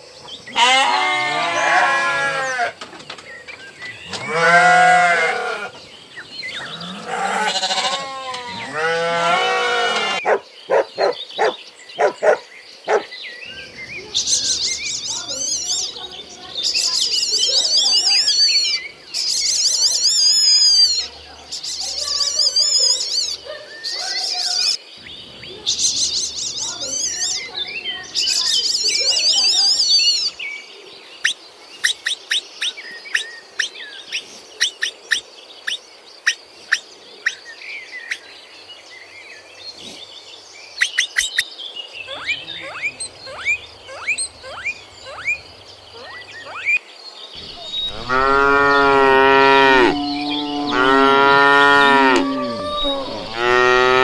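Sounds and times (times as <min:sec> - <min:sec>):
cow mooing: 0:06.6 - 0:10.2, 0:47.4 - 0:54.0
high bird chirps: 0:31.2 - 0:38.3, 0:40.8 - 0:46.8, 0:47.4 - 0:51.3.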